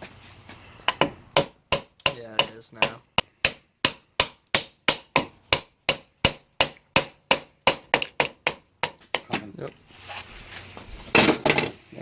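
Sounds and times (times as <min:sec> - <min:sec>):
hammer striking metal: 0:00.9 - 0:09.4.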